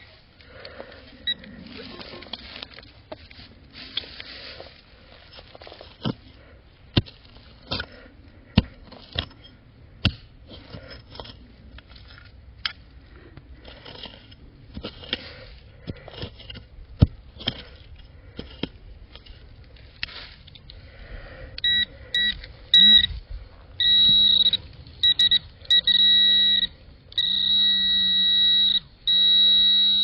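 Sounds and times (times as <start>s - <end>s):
digging scrapes and clicks: 0.0s - 30.0s
metal detector beeps: 1.2s - 1.5s, 21.6s - 23.2s, 23.8s - 30.0s.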